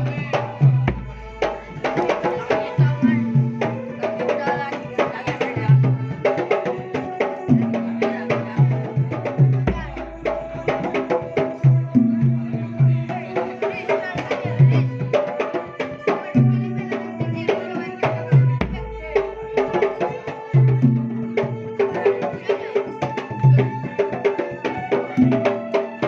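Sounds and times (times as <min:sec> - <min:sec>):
deep bass drum boom: 0:00.0 - 0:01.7, 0:09.4 - 0:10.5
hand drums in a steady pattern: 0:00.0 - 0:26.0.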